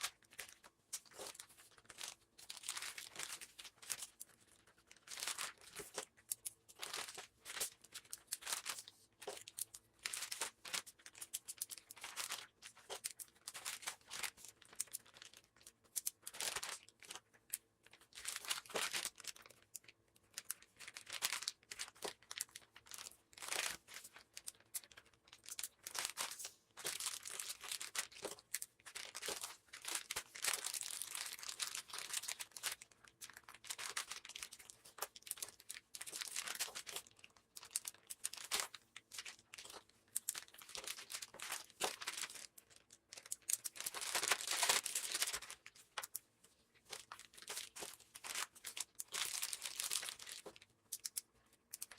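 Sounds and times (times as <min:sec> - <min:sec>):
plastic packaging crinkling: 0:00.0 - 0:51.9
plastic tearing: 0:18.1 - 0:46.2, 0:46.8 - 0:51.9.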